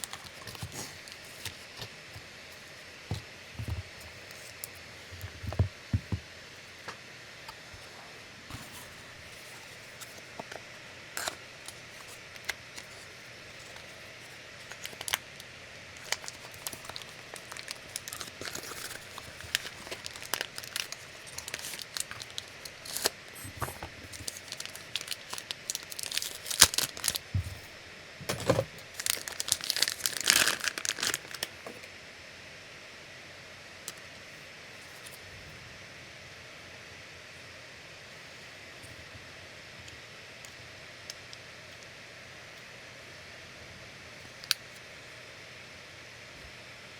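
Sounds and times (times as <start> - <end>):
packaging crinkling and rustling: 0.0 - 5.7, 11.2 - 27.7, 28.3 - 31.8.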